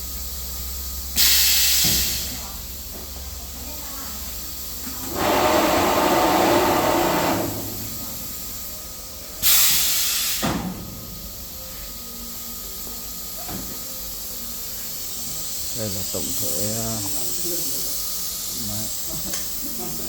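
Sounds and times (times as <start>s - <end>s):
short sharp hiss: 1.2s - 2.4s, 9.4s - 11.2s
fabric cutting machine rushing: 5.0s - 7.8s.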